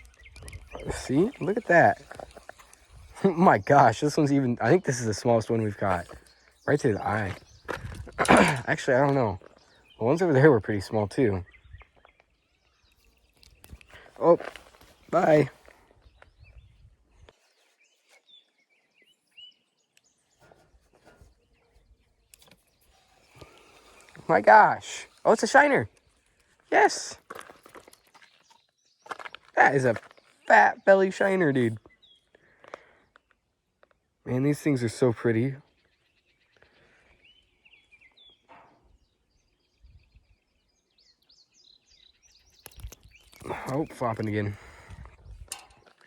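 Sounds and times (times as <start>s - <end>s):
faint bird chirps: 0.0s - 8.2s.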